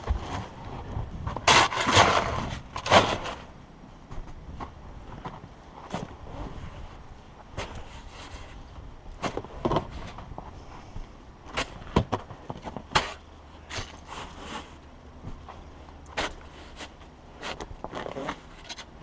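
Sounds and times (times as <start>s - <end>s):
snow shovel scraping snow: 1.5s - 3.5s, 13.0s - 14.8s.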